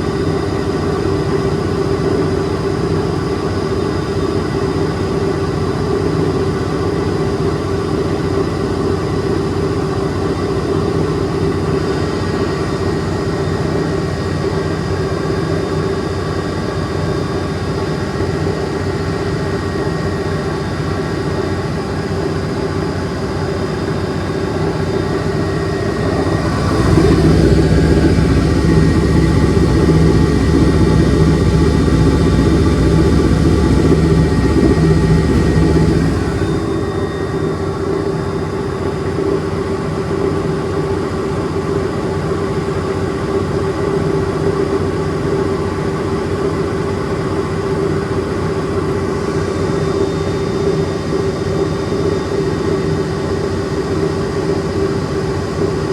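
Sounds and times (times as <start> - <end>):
washing machine humming and rumbling: 21.6 - 39.6.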